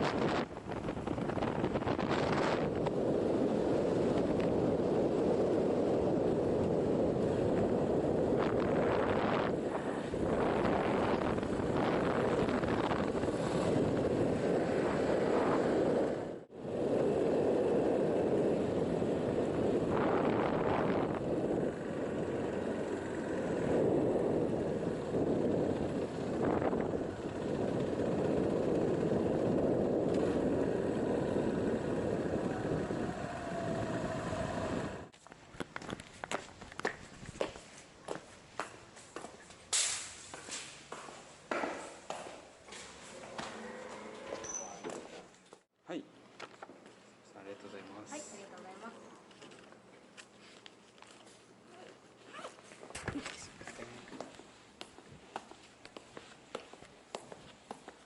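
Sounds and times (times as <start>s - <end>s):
wind buffeting microphone: 0.0s - 37.6s.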